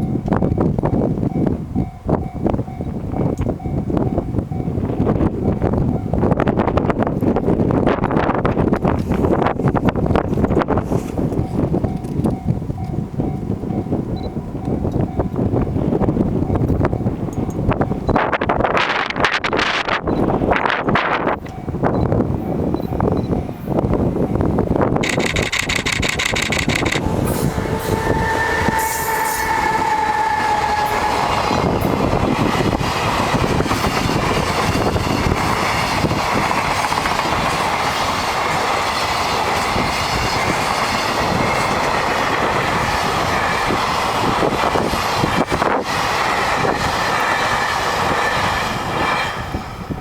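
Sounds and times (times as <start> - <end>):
freight train rumbling past: 0.0 - 25.4, 26.6 - 50.0
wheels clicking over rail joints: 24.2 - 48.3.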